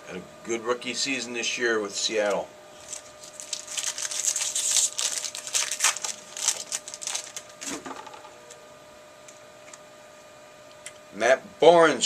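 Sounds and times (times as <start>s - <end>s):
foil wrapper crinkling and tearing: 2.8s - 7.7s.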